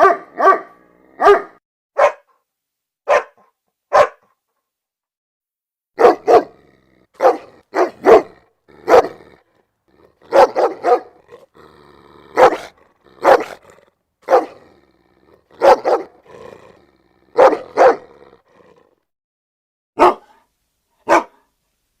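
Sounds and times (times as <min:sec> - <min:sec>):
dog barking: 0:00.0 - 0:02.4, 0:03.0 - 0:04.4, 0:06.0 - 0:06.6, 0:07.2 - 0:09.4, 0:10.2 - 0:11.5, 0:12.3 - 0:14.7, 0:15.4 - 0:16.4, 0:17.3 - 0:18.4, 0:20.0 - 0:21.5.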